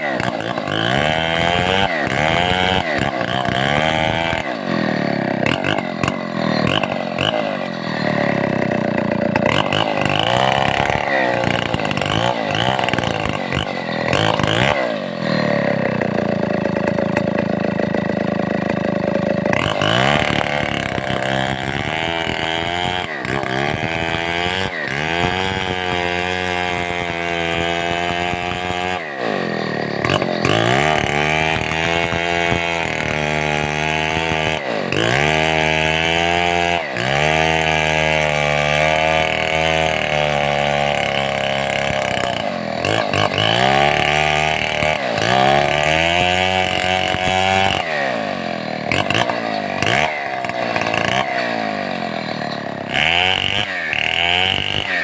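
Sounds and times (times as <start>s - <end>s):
chainsaw cutting wood: 0.0s - 55.0s.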